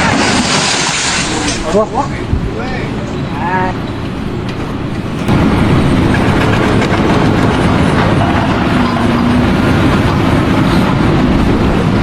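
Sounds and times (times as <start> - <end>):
mechanical rumbling with rattle: 3.8 - 12.0.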